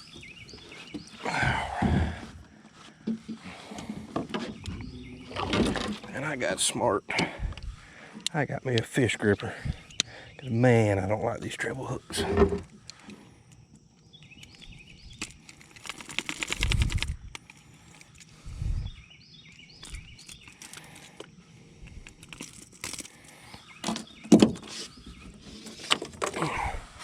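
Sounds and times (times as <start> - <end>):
faint bird chirps: 0.0 - 2.2, 4.4 - 12.1, 14.0 - 15.3, 17.6 - 20.7
rapid rattle: 15.2 - 17.2.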